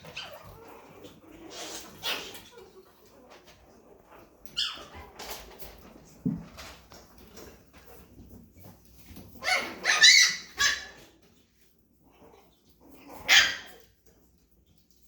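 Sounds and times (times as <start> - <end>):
puppies yapping: 0.0 - 5.5, 9.4 - 11.4, 12.1 - 14.0.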